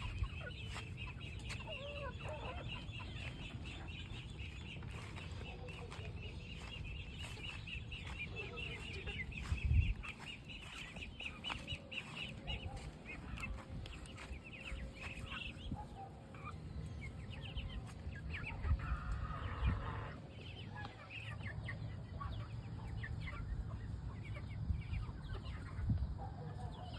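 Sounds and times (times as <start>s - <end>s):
high bird chirps: 0.0s - 15.8s
chickens clucking: 0.0s - 26.9s.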